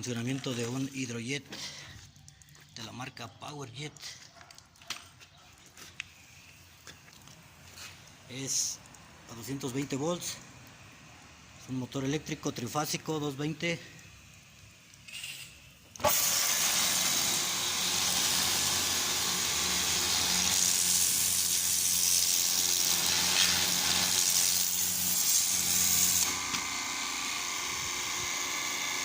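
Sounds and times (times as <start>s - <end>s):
pressure washer hiss: 13.4s - 26.7s
electric motor hum: 16.0s - 29.0s.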